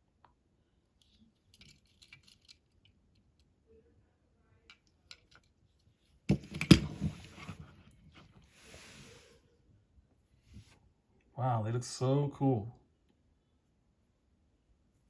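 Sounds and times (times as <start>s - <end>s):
toy cars clicking and tapping: 1.5s - 3.5s, 4.7s - 5.6s
clattering and rustling: 6.2s - 8.5s.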